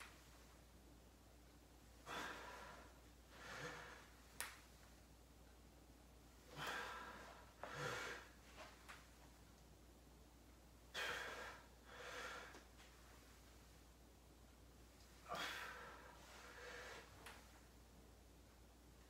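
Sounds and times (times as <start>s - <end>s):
person breathing: 2.0s - 4.2s, 6.5s - 8.4s, 10.9s - 12.7s, 15.2s - 17.3s.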